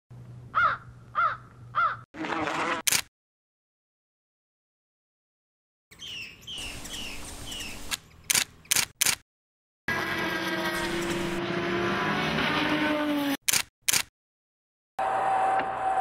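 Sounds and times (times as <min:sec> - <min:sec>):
camera shutter clicks: 0:02.9 - 0:03.1, 0:07.9 - 0:09.2, 0:13.5 - 0:14.1.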